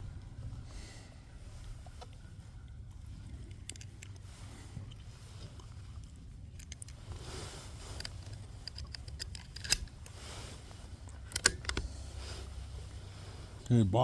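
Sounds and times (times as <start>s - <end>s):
rifle bolt clicks and knocks: 3.4s - 4.3s, 6.5s - 7.1s, 7.8s - 10.2s, 11.1s - 12.1s.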